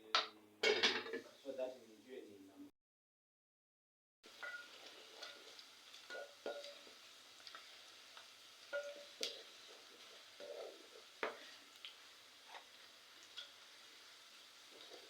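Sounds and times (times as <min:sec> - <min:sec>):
faint hiss: 0:01.2 - 0:02.6
spoon scraping and clinking pot: 0:04.3 - 0:06.9, 0:08.7 - 0:11.4.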